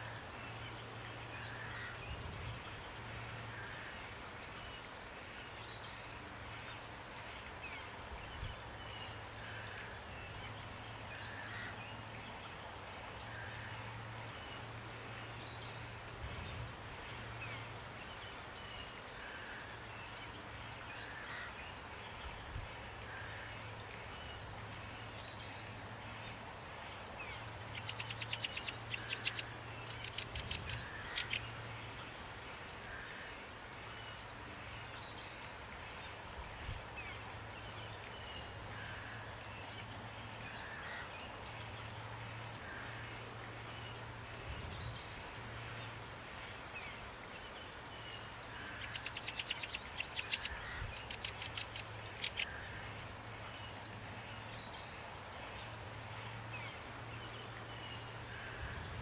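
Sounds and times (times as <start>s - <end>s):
rain hiss: 0.0s - 59.0s
birds chirping and singing: 47.8s - 53.4s.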